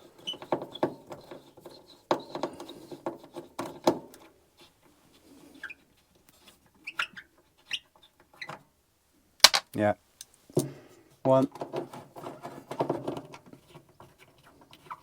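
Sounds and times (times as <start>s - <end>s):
faint squeaks: 0.0s - 3.6s, 4.5s - 8.7s.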